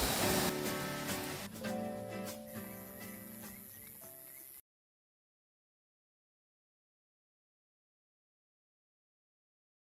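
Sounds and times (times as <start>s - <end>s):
plucked guitar-like notes: 0.1s - 3.6s.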